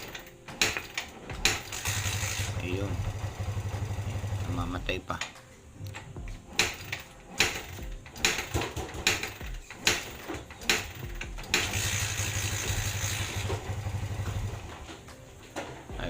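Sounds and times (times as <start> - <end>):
motorcycle engine kick-started: 1.5 - 4.6, 10.7 - 14.8.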